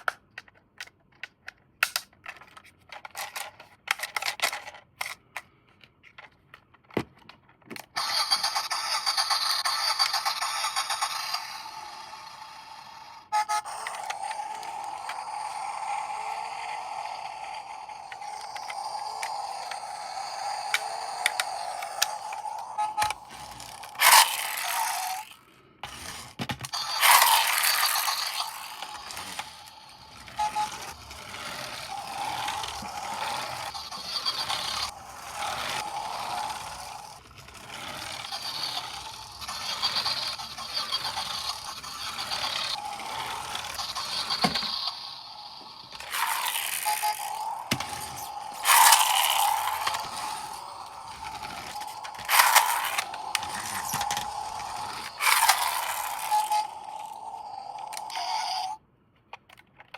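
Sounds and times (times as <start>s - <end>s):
toy motor whining: 1.8s - 5.2s, 7.7s - 58.8s
plastic scraping and rattling: 17.8s - 44.8s, 45.9s - 58.2s.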